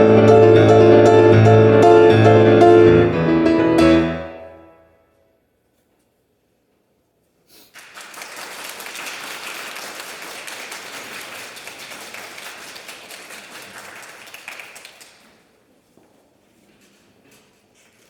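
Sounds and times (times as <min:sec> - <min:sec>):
audience applauding: 0:07.7 - 0:15.5.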